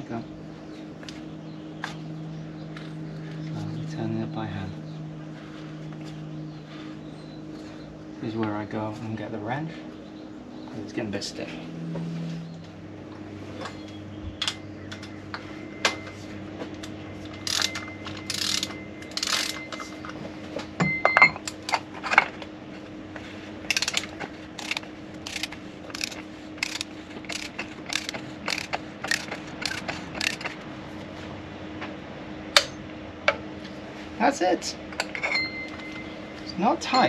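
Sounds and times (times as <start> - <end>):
ratchet wrench clicking: 17.4 - 19.6, 23.7 - 30.6.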